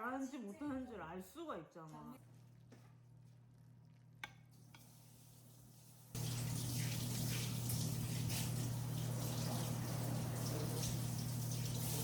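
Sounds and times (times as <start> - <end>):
tap water running into sink: 6.2 - 12.0.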